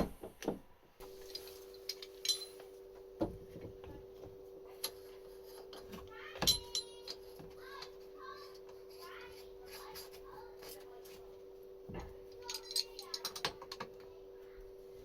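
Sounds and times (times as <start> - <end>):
metal parts clinking: 1.0 - 2.8, 5.6 - 7.4, 12.3 - 14.0
low hum: 1.0 - 15.0.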